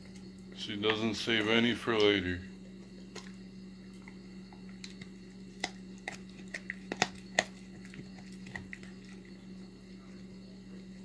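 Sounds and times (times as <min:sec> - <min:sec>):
puppy chewing rawhide: 0:00.0 - 0:11.0.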